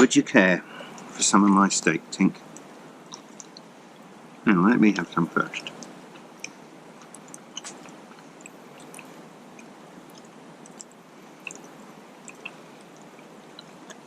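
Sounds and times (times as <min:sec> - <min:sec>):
man chewing: 0:02.4 - 0:04.2, 0:05.7 - 0:14.0
faint clicks: 0:05.0 - 0:14.0.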